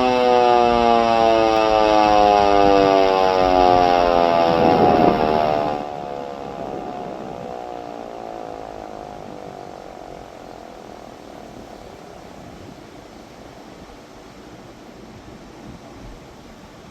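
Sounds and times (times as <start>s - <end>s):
siren winding down: 0.0s - 12.5s
low rumble and hiss: 4.6s - 16.9s.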